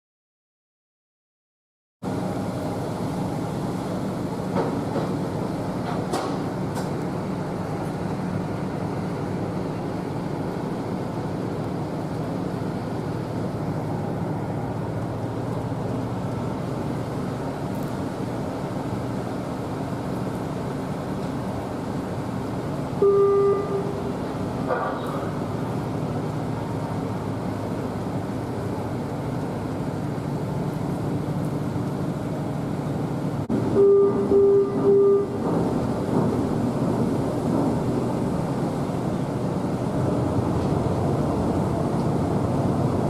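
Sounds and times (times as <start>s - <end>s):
ferry engines droning: 2.0s - 43.0s
ship horn blast: 23.0s - 24.5s, 33.5s - 35.5s.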